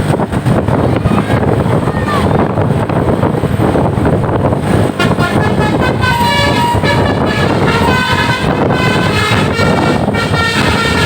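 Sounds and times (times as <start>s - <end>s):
bus engine: 0.0s - 11.0s
road noise: 0.0s - 11.0s
bus horn playing a tune: 4.8s - 11.0s.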